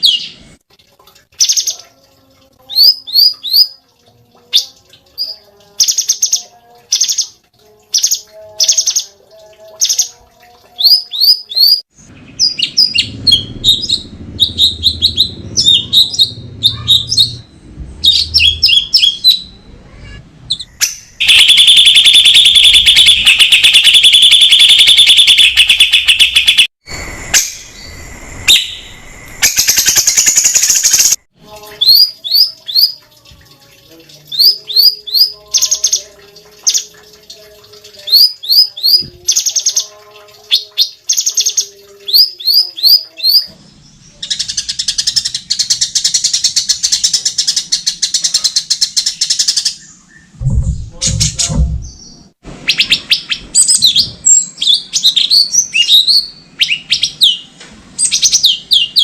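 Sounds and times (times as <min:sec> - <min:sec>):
bird whistling song: 0:12.4 - 0:19.6, 0:20.5 - 0:26.7, 0:51.8 - 0:59.0
dull low thumps: 0:50.3 - 0:52.3.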